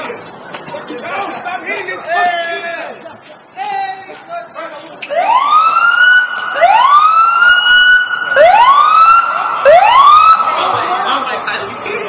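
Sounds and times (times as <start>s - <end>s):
emergency siren rising sweeps: 5.1s - 11.9s.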